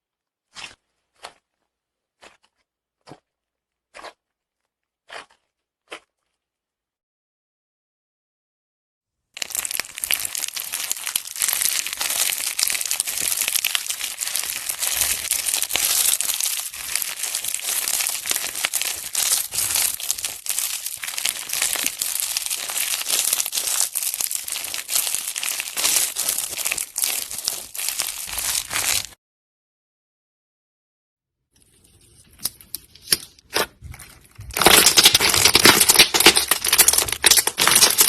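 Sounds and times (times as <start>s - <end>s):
slime squeezed crackling and popping: 9.4s - 29.2s, 33.5s - 38.0s.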